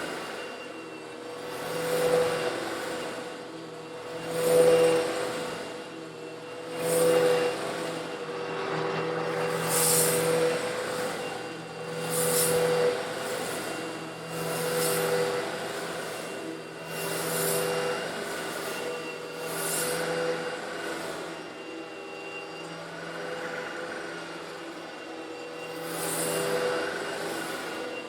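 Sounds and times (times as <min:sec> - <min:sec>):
vacuum cleaner running: 0:00.0 - 0:28.0.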